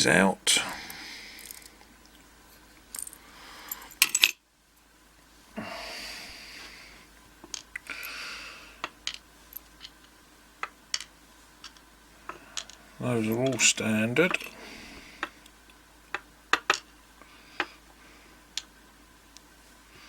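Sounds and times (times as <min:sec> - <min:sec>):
metal pins clinking on hard surface: 0:03.0 - 0:04.4, 0:12.4 - 0:14.6, 0:16.1 - 0:16.9.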